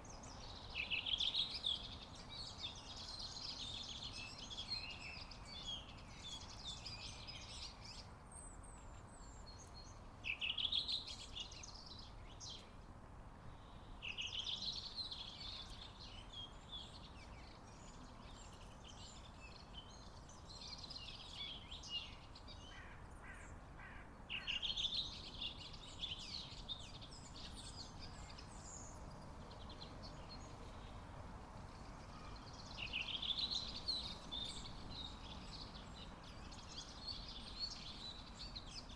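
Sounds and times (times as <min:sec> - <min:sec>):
small songbirds singing: 0:00.0 - 0:12.8, 0:13.5 - 0:23.6, 0:24.3 - 0:38.9.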